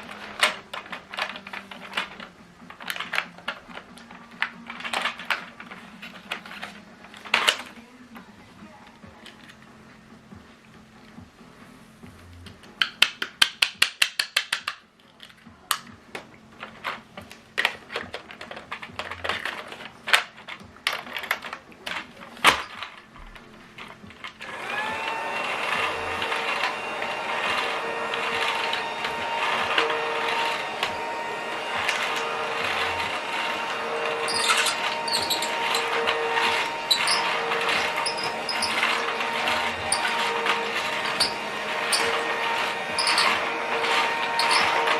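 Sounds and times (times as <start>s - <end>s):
toy vacuum motor whine: 0.0s - 7.7s, 17.7s - 44.9s
plastic toy clicks and knocks: 0.0s - 7.8s, 12.5s - 24.5s.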